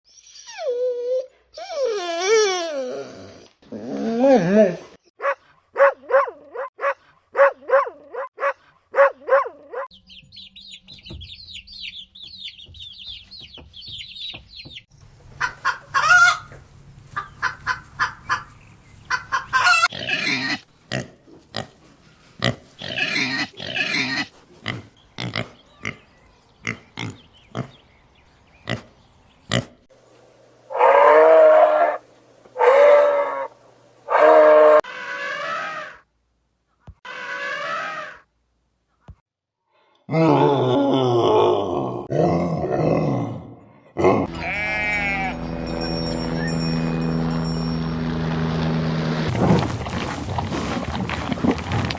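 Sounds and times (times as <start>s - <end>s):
chickens clucking: 10.7s - 27.8s
animal yelps: 30.7s - 32.0s, 32.6s - 36.0s, 37.0s - 38.3s.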